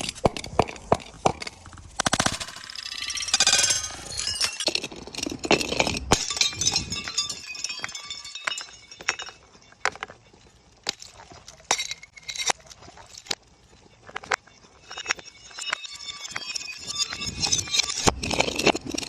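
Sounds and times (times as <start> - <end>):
glass bottles shattering: 2.3 - 13.4, 14.2 - 19.0
glass clinks: 2.8 - 13.4, 14.2 - 19.0.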